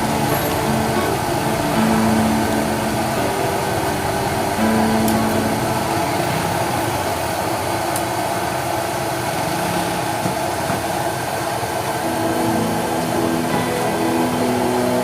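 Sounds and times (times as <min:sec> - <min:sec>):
steady machine noise: 0:00.0 - 0:15.0.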